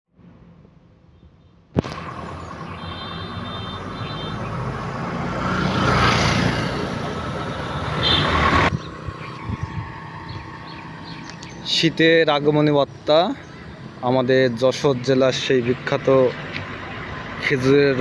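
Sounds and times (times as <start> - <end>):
vehicle passing: 1.9 - 12.1, 15.3 - 18.0.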